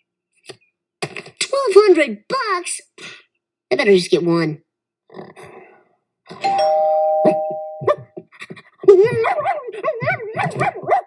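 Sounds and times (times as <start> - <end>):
two-note doorbell chime: 6.4 - 8.0
dog barking: 9.0 - 11.0.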